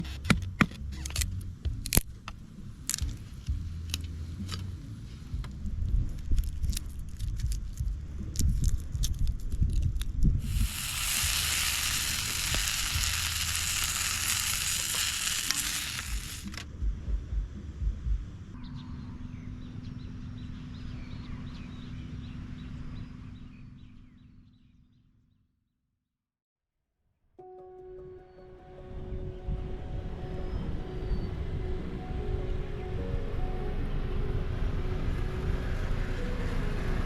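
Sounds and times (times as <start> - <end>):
low hum: 1.1 - 24.4, 28.4 - 37.0
food sizzling in a pan: 10.4 - 16.6.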